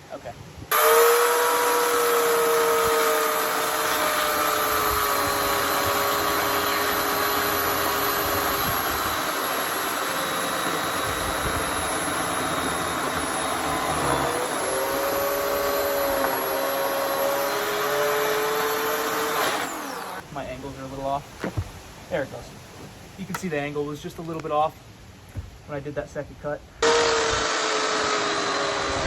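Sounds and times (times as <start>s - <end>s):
electric chainsaw cutting log: 0.7s - 20.2s, 26.8s - 29.0s.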